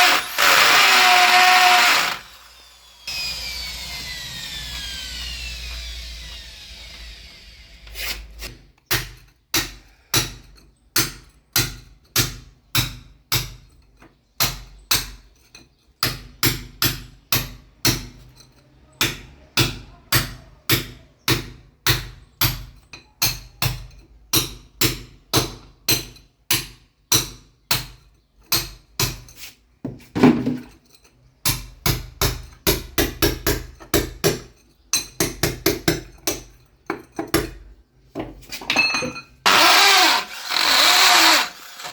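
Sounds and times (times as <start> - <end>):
hammer striking concrete: 8.5 - 13.7, 14.4 - 15.3, 16.0 - 18.3, 19.0 - 29.3, 31.4 - 37.6.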